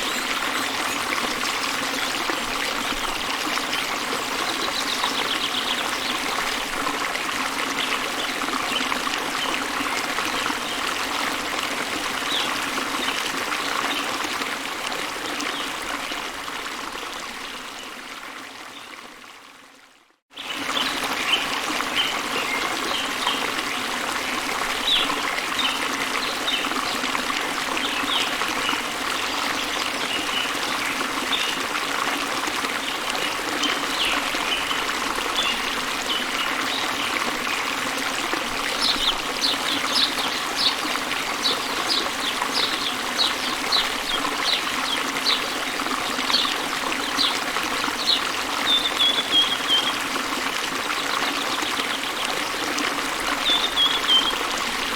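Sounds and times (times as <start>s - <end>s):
waterfall rushing: 33.2s - 51.1s.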